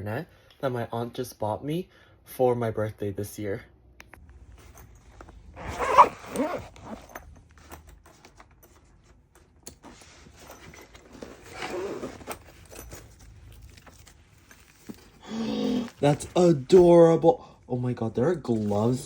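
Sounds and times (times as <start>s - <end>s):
packaging rustling: 10.9s - 15.2s.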